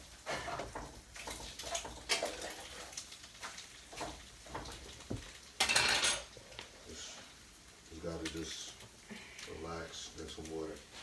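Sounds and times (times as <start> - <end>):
dishes and utensils clinking: 5.6 - 6.3.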